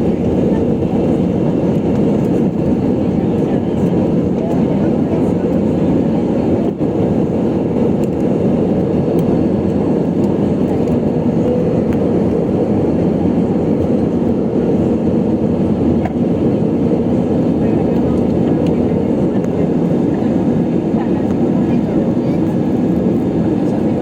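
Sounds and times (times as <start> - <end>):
airplane cabin rumble: 0.0 - 24.0.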